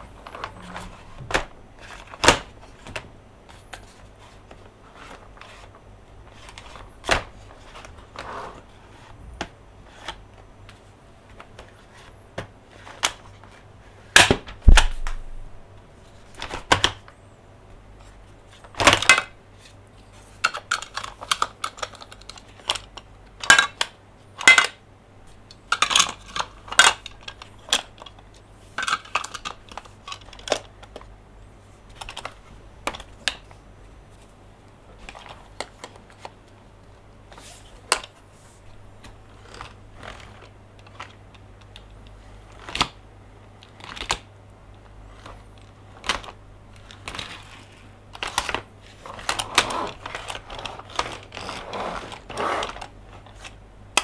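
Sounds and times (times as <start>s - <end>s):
plastic toy trucks clattering: 20.4s - 24.8s, 25.6s - 28.2s, 28.8s - 31.1s.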